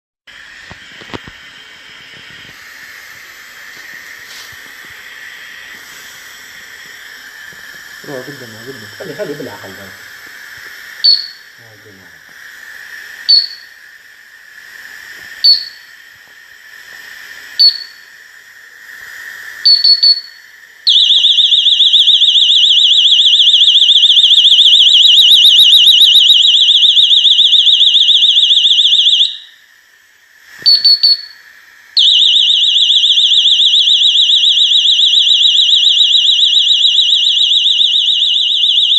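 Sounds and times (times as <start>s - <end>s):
warbling high-pitched alarm tone: 3.8s - 10.1s, 10.9s - 12.2s, 13.1s - 14.0s, 15.4s - 16.1s, 17.4s - 18.2s, 19.6s - 29.7s, 30.6s - 31.4s, 32.0s - 38.9s
short high beeps: 11.0s - 11.4s, 19.7s - 20.3s, 30.6s - 31.4s.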